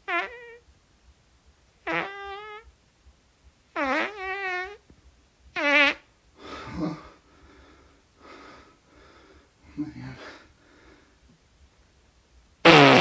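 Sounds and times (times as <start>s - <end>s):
squeaky farts: 0.0s - 0.6s, 1.8s - 2.7s, 3.8s - 4.8s, 5.6s - 6.1s, 12.6s - 13.0s.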